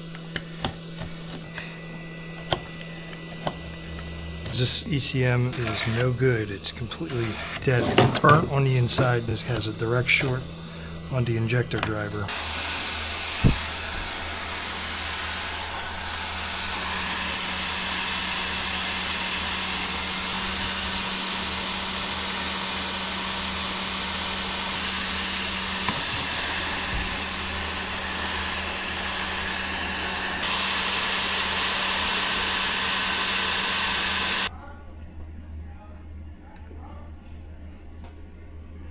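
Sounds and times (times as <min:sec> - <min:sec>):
hot-air gun blowing: 0:00.0 - 0:34.5.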